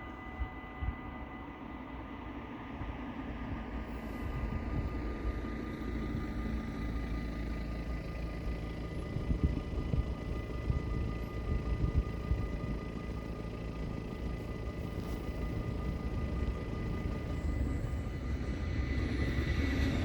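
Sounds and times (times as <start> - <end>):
low rumble: 4.0 - 20.0.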